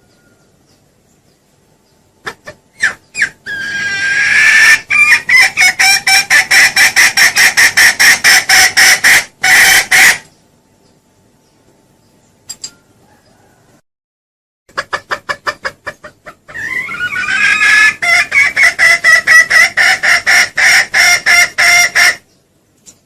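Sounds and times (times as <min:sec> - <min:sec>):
junglefowl calling: 0:02.2 - 0:10.3, 0:14.7 - 0:22.3
junglefowl clucking: 0:02.2 - 0:10.3, 0:14.7 - 0:22.3.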